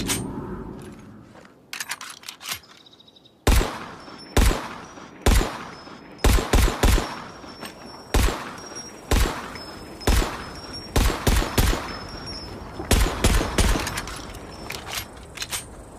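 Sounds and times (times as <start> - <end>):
pistol shots with echo: 3.4 - 12.0, 12.9 - 14.0.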